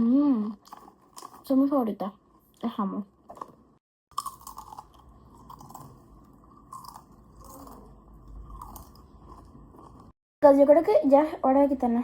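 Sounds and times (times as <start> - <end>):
person chewing crunchy chips: 0.6 - 1.5, 3.3 - 10.2.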